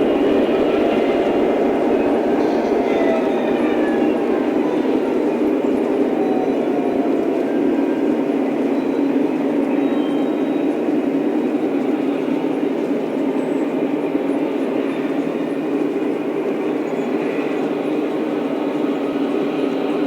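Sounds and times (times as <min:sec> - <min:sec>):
model train rumbling on track: 0:00.0 - 0:20.0.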